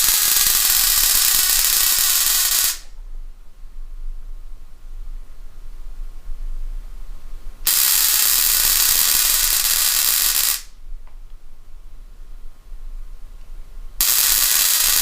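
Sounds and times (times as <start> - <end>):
ozone generator hissing: 0.0 - 2.9, 14.0 - 15.0.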